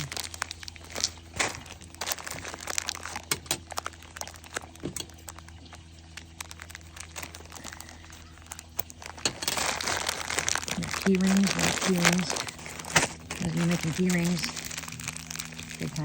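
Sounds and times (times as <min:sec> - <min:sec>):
plastic packaging crinkling: 0:00.0 - 0:16.0
small metal pieces clinking: 0:06.4 - 0:16.0.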